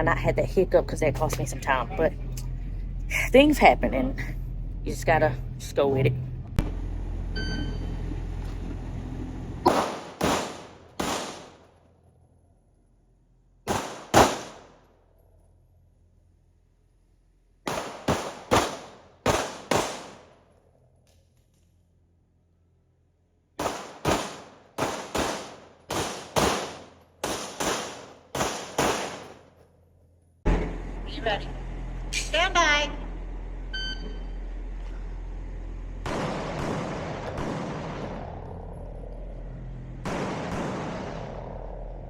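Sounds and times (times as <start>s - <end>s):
pistol gunshots: 9.6s - 11.7s, 13.6s - 14.8s, 17.7s - 20.4s, 23.6s - 29.5s, 36.0s - 38.6s, 40.0s - 42.0s.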